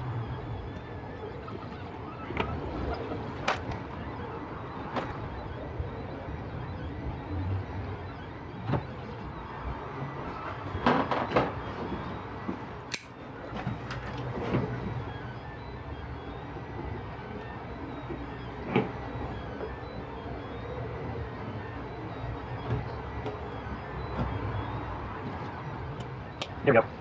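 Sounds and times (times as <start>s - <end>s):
knife prying plastic housing: 12.9s - 13.1s.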